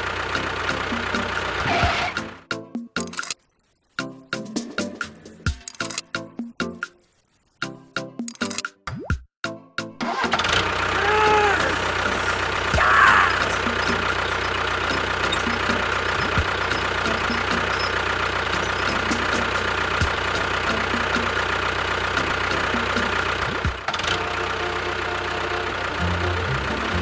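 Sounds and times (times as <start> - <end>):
engine idling with knocking: 0.0 - 2.4, 10.4 - 27.0.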